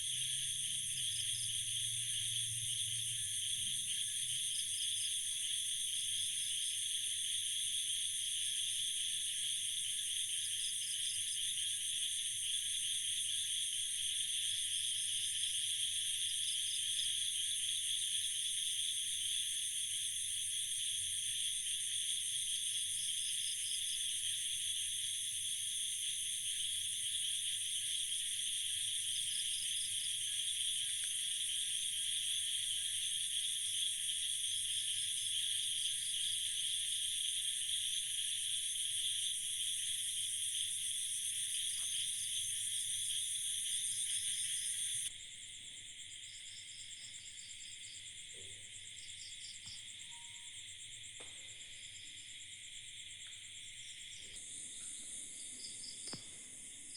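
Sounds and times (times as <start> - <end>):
pulsing insect trill: 31.3 - 45.1, 50.0 - 51.0.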